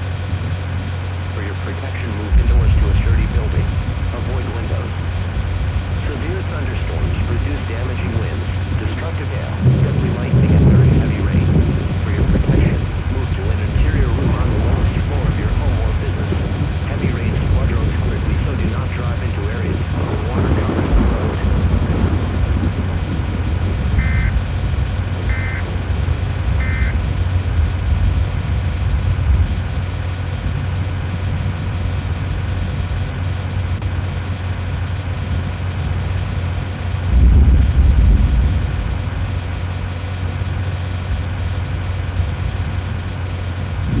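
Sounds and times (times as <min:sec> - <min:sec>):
vehicle road and engine rumble: 0:00.0 - 0:44.0
short high beeps: 0:24.0 - 0:24.4, 0:25.3 - 0:25.7, 0:26.6 - 0:27.0.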